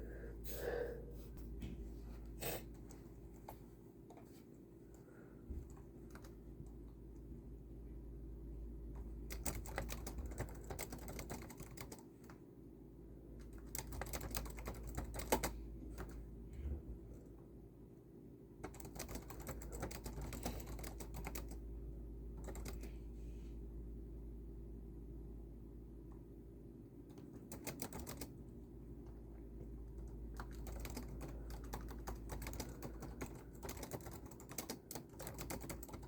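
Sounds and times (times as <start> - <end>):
steady low hum: 0.0 - 36.0
typing on a computer keyboard: 5.6 - 6.8, 9.0 - 12.4, 13.4 - 16.2, 18.6 - 21.6, 22.4 - 22.9, 27.1 - 28.4, 29.9 - 36.0.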